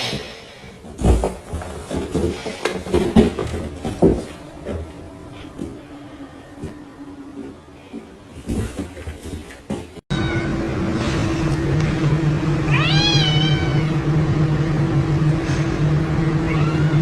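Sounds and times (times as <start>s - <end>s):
steady low hum: 0.0s - 17.0s
cat meowing: 12.7s - 13.9s, 16.5s - 17.0s.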